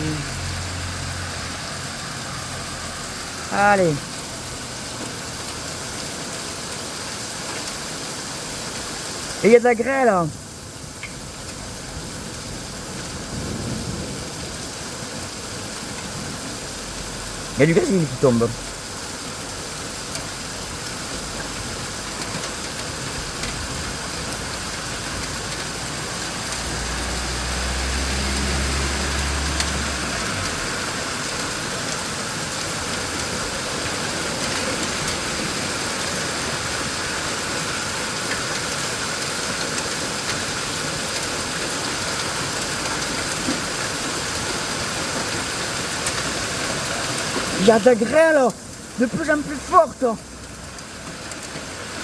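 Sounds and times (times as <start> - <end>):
vehicle engine hum: 0.0 - 6.0, 17.0 - 37.3
heavy rain with sleet and hail: 0.0 - 52.0.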